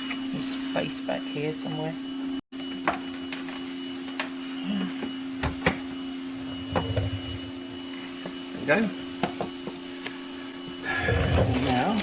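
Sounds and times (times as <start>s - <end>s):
steady hum: 4.0s - 9.2s.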